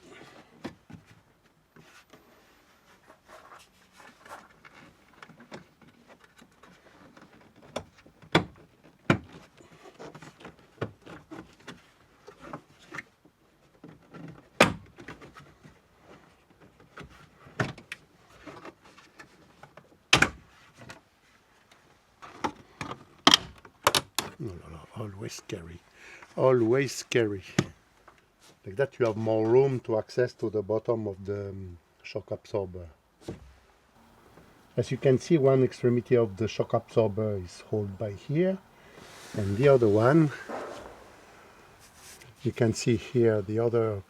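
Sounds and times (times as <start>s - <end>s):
plastic handling: 37.7s - 43.1s.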